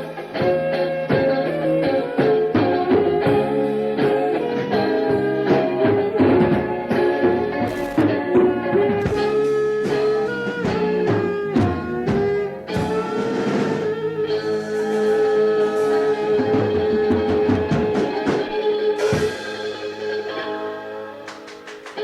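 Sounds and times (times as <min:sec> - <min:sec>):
band playing with drums and guitar: 0:00.0 - 0:22.0.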